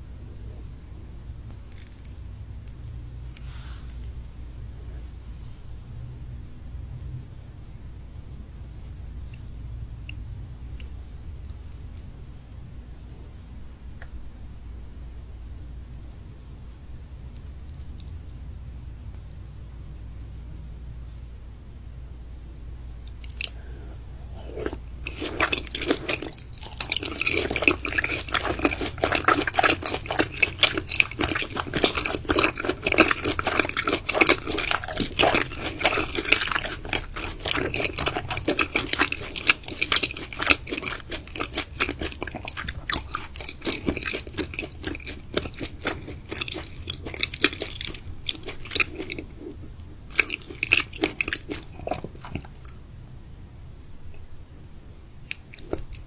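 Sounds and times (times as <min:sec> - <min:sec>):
chewing raw meat: 0:23.1 - 0:52.8, 0:55.3 - 0:56.0.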